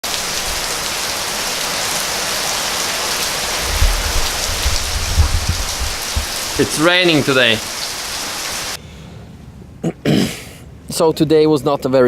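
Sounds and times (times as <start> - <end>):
heavy rain: 0.0 - 8.8
low rumbling bumps: 3.4 - 8.6.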